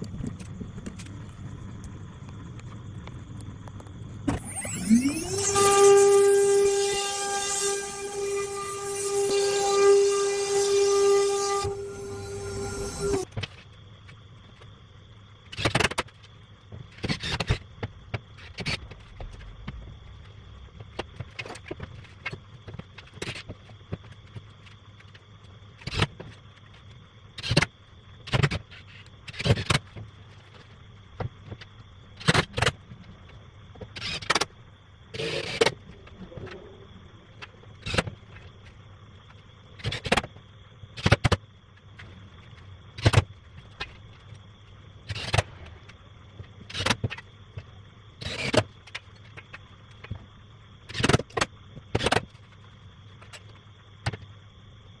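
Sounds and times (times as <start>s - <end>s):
router spindle whine: 4.0s - 13.4s, 35.1s - 38.8s
router bit cutting wood: 4.3s - 13.2s.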